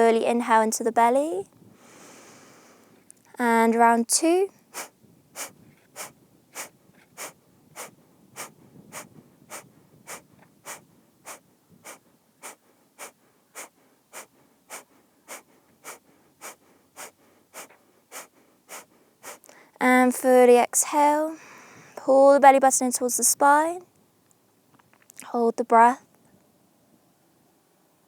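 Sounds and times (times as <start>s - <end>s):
forceful nasal exhales: 1.7s - 3.0s, 4.7s - 19.7s.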